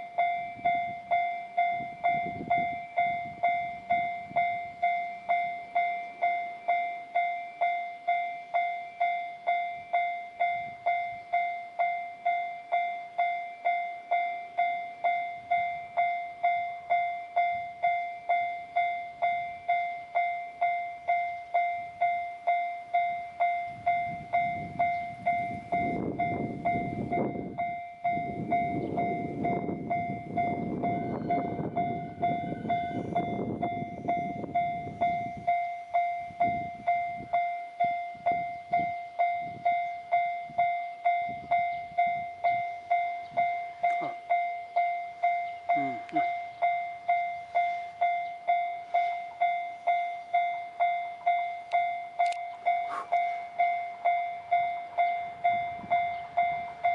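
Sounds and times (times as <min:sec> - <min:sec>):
level crossing warning bell ringing: 0:00.0 - 0:56.9
train rumbling past: 0:00.0 - 0:56.9.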